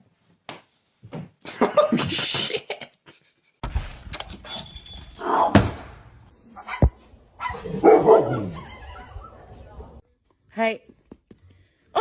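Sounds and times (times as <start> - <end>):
dog barking: 6.6 - 9.2.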